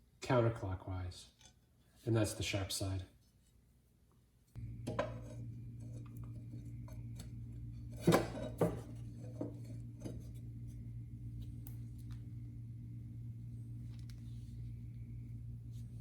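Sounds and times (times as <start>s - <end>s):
steady low hum: 4.5s - 16.0s.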